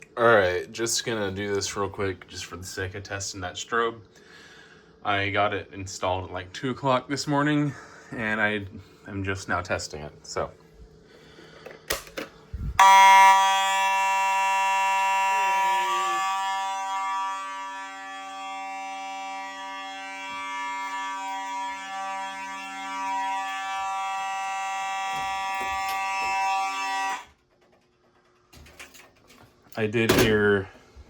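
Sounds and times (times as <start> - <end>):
fire alarm horns: 12.8 - 27.4.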